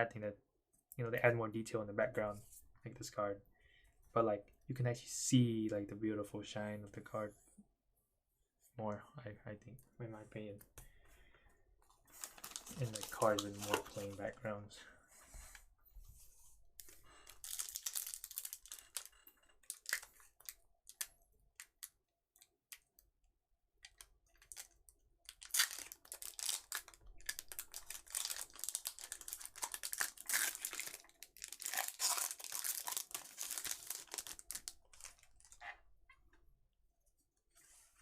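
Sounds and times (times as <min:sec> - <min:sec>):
foil wrapper crinkling and tearing: 0:12.1 - 0:14.2, 0:16.8 - 0:21.1, 0:25.3 - 0:35.6.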